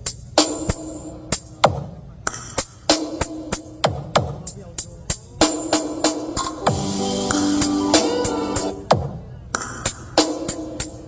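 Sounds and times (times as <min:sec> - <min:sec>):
electronic dance beat on loudspeaker: 0:06.7 - 0:09.3.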